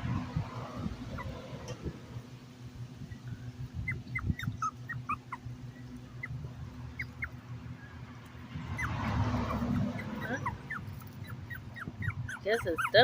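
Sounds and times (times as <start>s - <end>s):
puppy whimpering: 3.8s - 7.4s, 8.8s - 13.0s.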